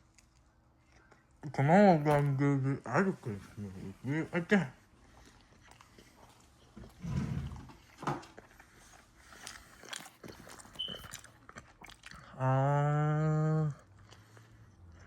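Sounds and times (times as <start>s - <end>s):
person chewing food: 0.0s - 2.4s, 4.8s - 12.4s, 13.7s - 15.0s
person humming mmm: 12.3s - 14.0s.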